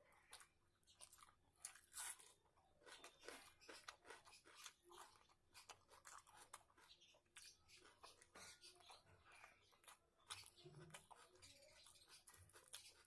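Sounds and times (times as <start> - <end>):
person chewing food: 0.0 - 13.0.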